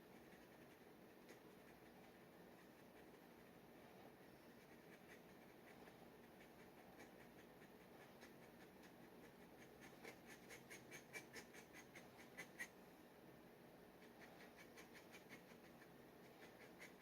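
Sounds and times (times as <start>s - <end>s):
dip pen scratching on paper: 4.6s - 12.7s.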